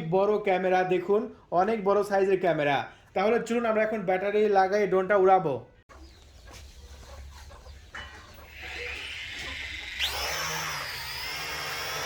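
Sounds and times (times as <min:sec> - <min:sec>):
drone propeller motors whining: 0:08.5 - 0:12.0.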